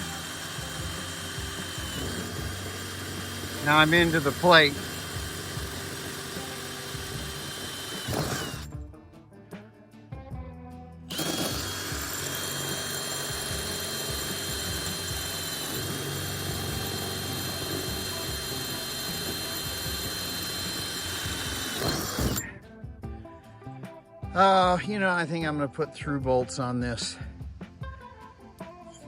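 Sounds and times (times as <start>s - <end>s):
power drill boring into metal: 0.0s - 8.7s, 11.1s - 22.5s.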